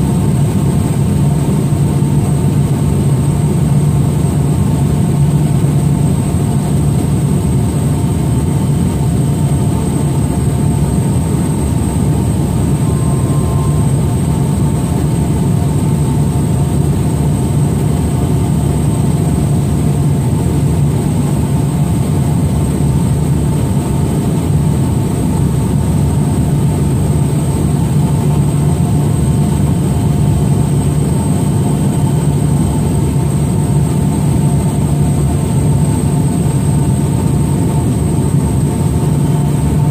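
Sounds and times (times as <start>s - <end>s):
plane engine and propeller drone: 0.0s - 39.9s
faint steady high tones: 12.5s - 14.8s.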